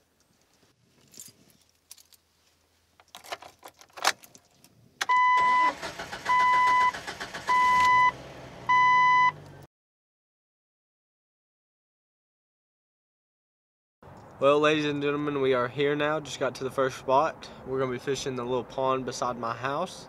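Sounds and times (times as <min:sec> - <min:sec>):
car warning chime beeping: 0:05.0 - 0:09.4
car engine starting and running: 0:05.0 - 0:09.7.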